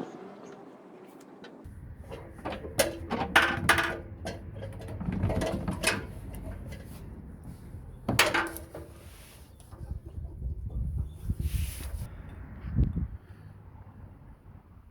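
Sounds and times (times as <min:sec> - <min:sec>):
metallic clanks and knocks: 0:01.4 - 0:11.2.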